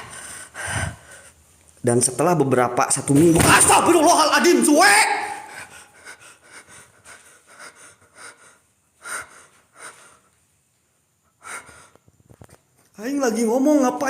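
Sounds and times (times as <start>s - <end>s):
person breathing quietly: 0.0s - 1.5s, 5.5s - 10.5s, 11.2s - 12.4s.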